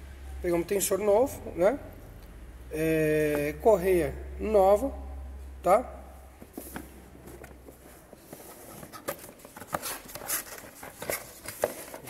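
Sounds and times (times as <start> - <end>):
clicks and rustles of handling parts: 6.4 - 12.0.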